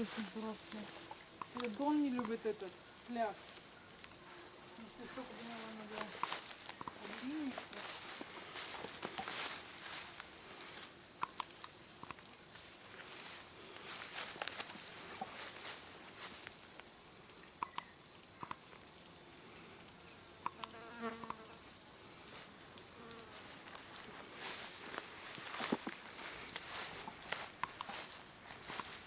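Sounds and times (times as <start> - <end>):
insects chirring: 0.0 - 29.0
faint clicks: 1.1 - 2.4, 11.1 - 12.2, 17.6 - 18.6.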